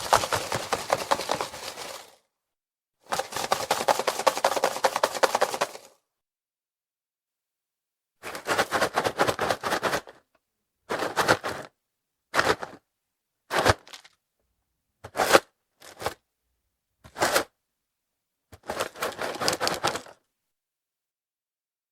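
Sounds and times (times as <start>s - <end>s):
cereal box being shaken: 0.0s - 2.3s, 3.0s - 6.0s, 8.2s - 10.3s, 10.9s - 11.8s, 12.4s - 12.8s, 13.5s - 14.2s, 18.6s - 20.3s.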